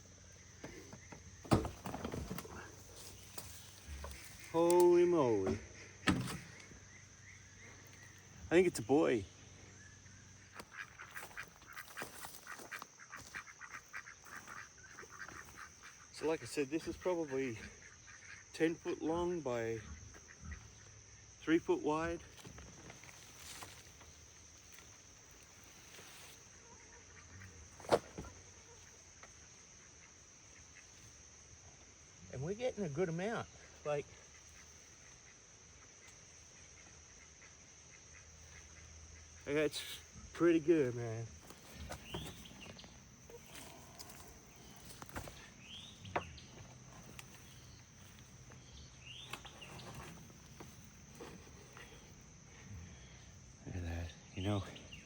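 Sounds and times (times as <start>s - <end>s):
insects trilling: 0.0s - 55.0s
hands knocking and rustling soil: 41.4s - 47.5s.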